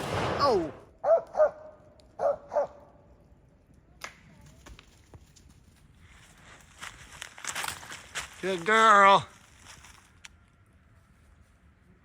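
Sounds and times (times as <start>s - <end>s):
dog barking: 1.0s - 2.8s.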